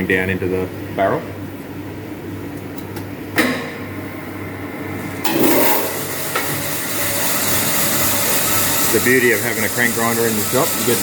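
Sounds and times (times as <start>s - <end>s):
grinder motor humming: 5.2s - 11.0s
metal hissing grind on wheel: 5.3s - 11.0s.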